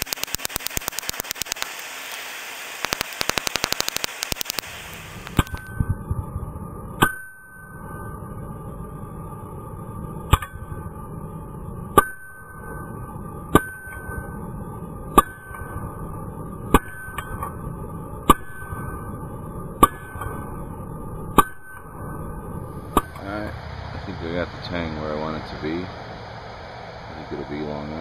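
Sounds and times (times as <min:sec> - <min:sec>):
hammer striking hot steel: 0:00.0 - 0:06.0, 0:07.0 - 0:08.6, 0:10.2 - 0:11.1, 0:11.8 - 0:23.6
steady rushing noise: 0:00.0 - 0:28.0.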